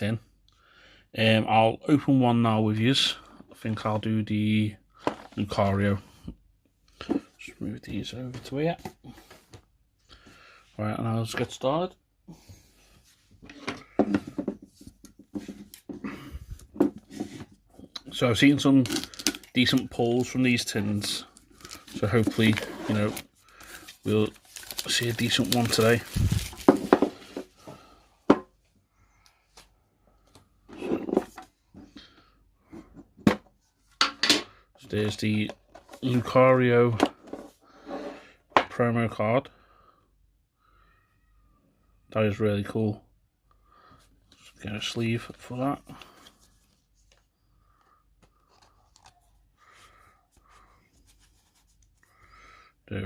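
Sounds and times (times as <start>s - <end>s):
rubbing and rustling: 20.0s - 27.7s, 48.2s - 52.1s.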